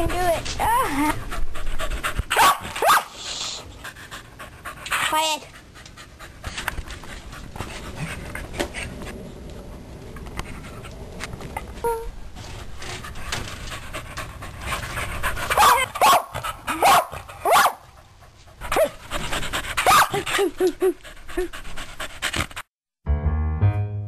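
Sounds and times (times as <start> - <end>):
music: 23.0 - 24.0.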